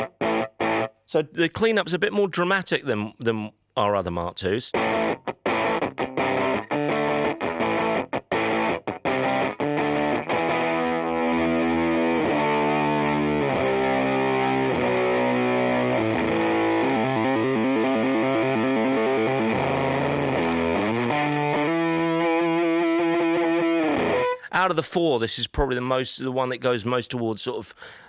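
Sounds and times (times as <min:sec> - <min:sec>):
fuzzed electric guitar chords: 0:00.0 - 0:01.0, 0:04.7 - 0:24.5.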